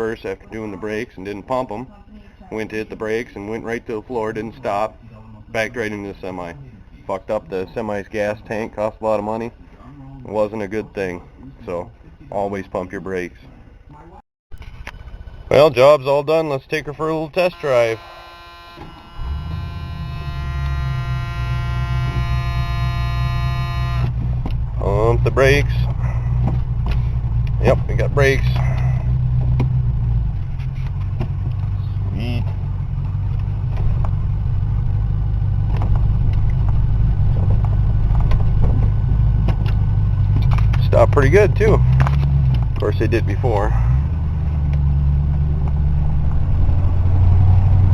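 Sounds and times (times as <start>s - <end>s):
road noise: 0.0s - 47.9s
steady hum of even tones: 14.6s - 35.8s
car engine running: 17.0s - 47.9s.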